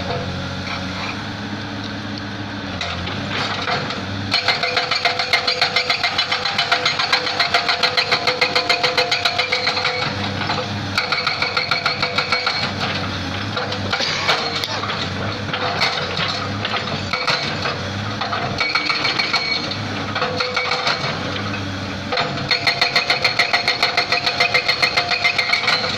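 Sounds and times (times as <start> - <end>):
excavator engine running: 0.0 - 25.9
hydraulic breaker hammering rock: 2.8 - 25.9.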